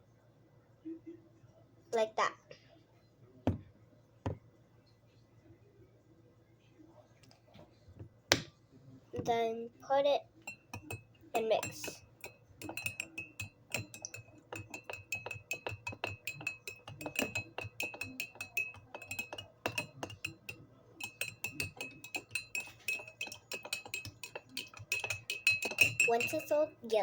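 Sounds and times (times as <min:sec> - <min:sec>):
teaspoon clinking against mug: 0:10.4 - 0:26.7.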